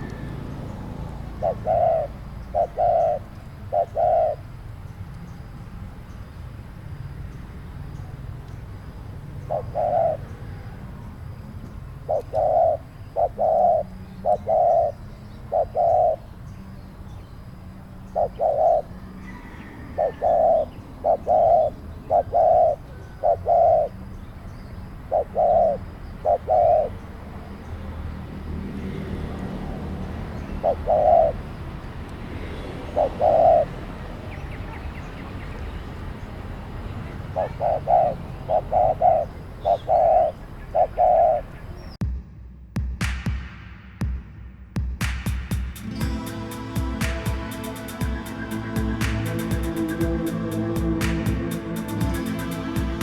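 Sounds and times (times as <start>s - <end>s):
dove cooing: 0.0s - 4.8s, 9.0s - 16.4s, 17.7s - 27.4s, 29.7s - 31.7s, 32.8s - 34.8s, 37.1s - 41.8s, 45.8s - 53.0s.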